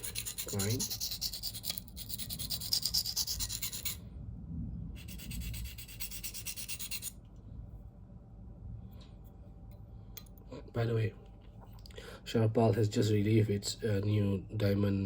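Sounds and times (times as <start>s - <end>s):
knife scraping on diamond plate: 0.0s - 4.0s.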